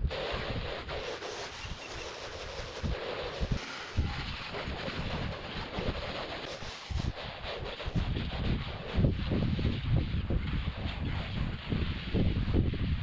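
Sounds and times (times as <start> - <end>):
water spray hiss from hose: 0.0 - 9.2
wind buffeting microphone: 0.0 - 13.0.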